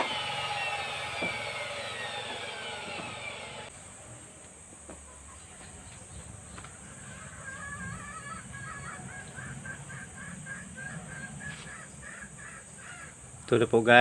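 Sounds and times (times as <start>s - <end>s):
bird calling: 5.2s - 13.6s.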